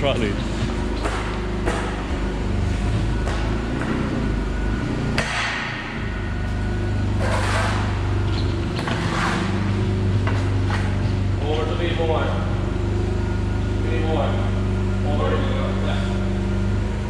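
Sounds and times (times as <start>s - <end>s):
workshop machinery humming: 0.0s - 17.0s
scraping rush: 7.2s - 8.1s.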